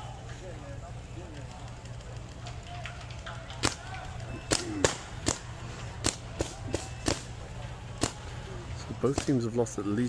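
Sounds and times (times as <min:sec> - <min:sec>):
paintball markers firing: 0:01.6 - 0:07.3, 0:08.0 - 0:08.2, 0:09.0 - 0:09.5.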